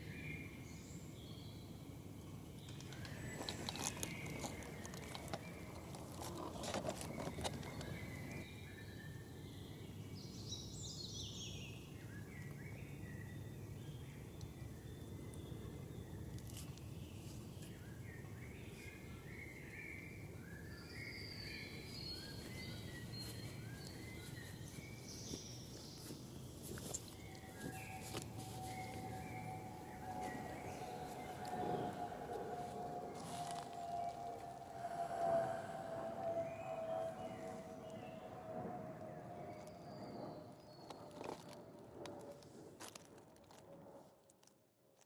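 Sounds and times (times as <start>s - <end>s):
birds chirping: 0.0s - 41.6s
steady low rumble: 21.6s - 43.2s.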